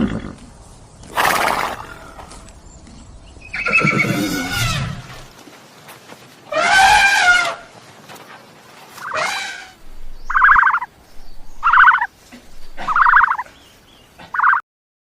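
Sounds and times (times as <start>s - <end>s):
farm bird rattling call: 9.0s - 10.9s, 11.6s - 13.6s, 14.3s - 14.6s.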